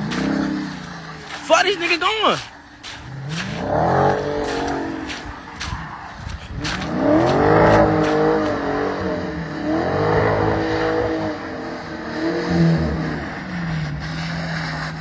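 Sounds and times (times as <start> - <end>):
car engine revving: 0.0 - 1.4, 2.4 - 15.0.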